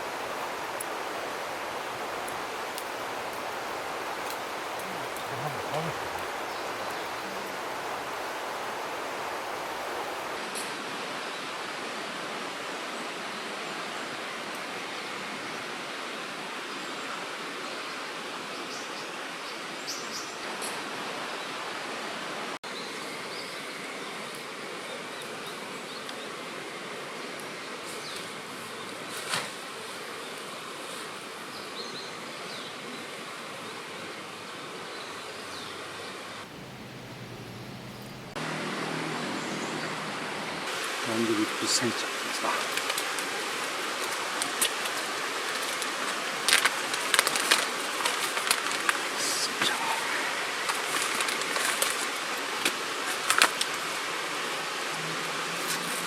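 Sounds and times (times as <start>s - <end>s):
flowing water rushing: 0.0s - 18.5s, 32.8s - 56.0s
outdoor background noise: 0.0s - 56.0s.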